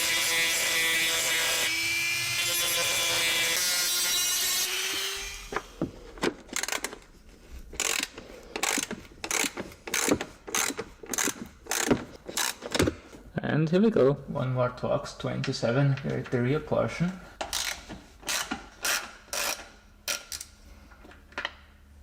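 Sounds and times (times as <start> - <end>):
electric rotary tool cutting metal: 0.0 - 5.7
metal parts clicking and rattling: 6.4 - 7.1, 7.7 - 12.9.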